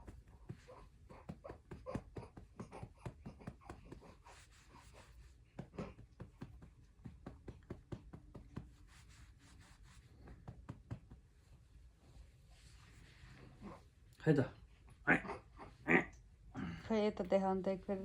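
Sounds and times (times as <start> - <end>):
hand patting baby's back: 5.5 - 11.7.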